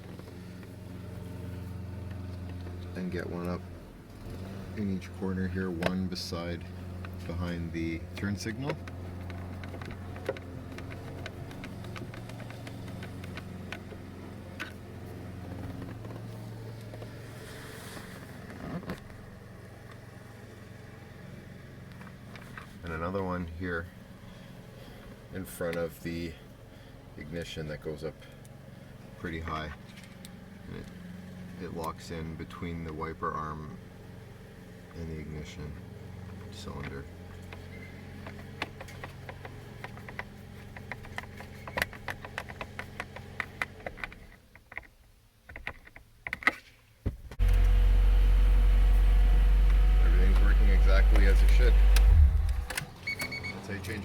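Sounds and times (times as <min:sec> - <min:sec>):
steady low hum: 0:47.4 - 0:52.9.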